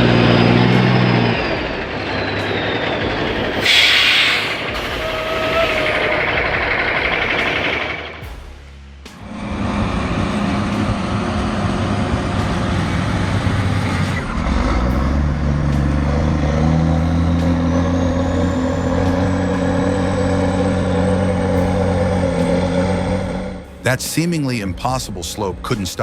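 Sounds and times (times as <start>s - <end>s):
truck diesel engine labouring: 0.0s - 26.0s.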